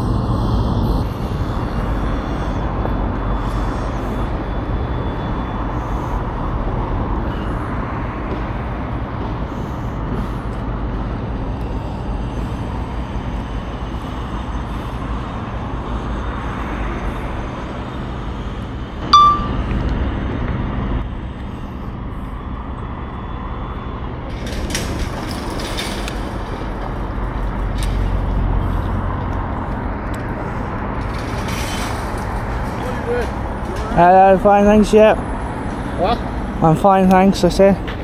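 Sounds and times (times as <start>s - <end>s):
road traffic rumble: 0.0s - 38.0s
short loud beep: 19.0s - 19.7s
sharp clinks: 19.1s - 19.6s.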